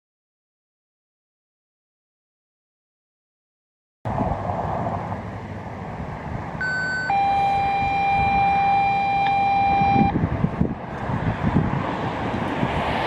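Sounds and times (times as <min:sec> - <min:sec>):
traffic rumble: 0:04.1 - 0:13.0
wind: 0:04.1 - 0:13.0
two-tone radio paging tones: 0:06.6 - 0:10.2.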